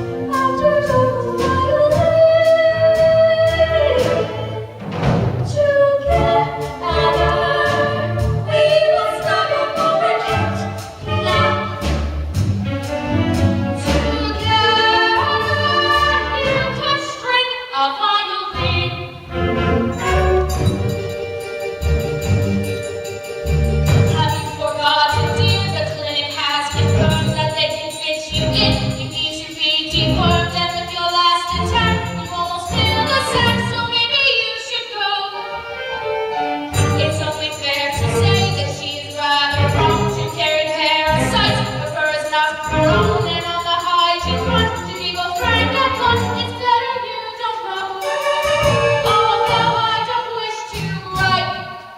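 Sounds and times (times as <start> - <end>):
instrumental accompaniment: 0.0 - 51.9
group of voices singing: 5.7 - 11.6.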